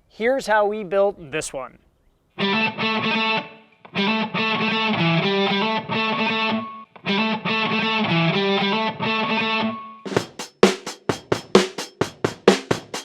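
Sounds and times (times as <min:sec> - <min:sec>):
distorted electric guitar chords: 0:02.4 - 0:10.2.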